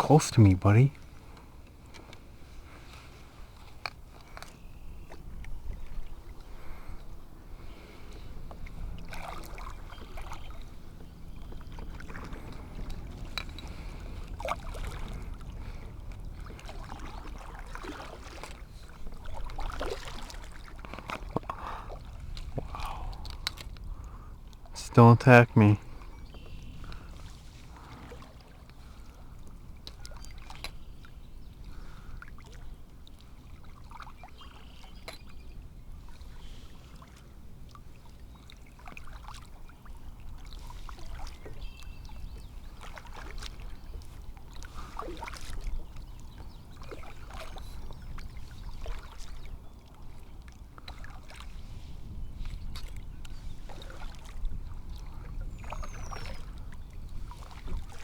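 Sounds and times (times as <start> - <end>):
water lapping against kayak hull: 0.4 - 58.0.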